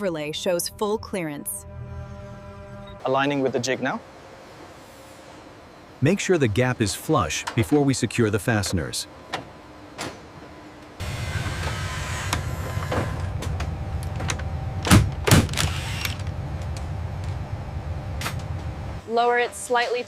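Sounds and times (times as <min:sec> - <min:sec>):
electric motor humming: 0:11.0 - 0:14.8, 0:15.5 - 0:18.1.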